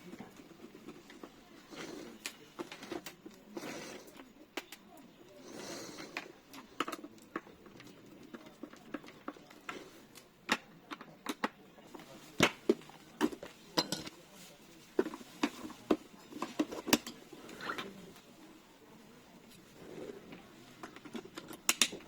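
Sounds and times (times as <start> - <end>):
soft rustles: 11.9 - 21.5.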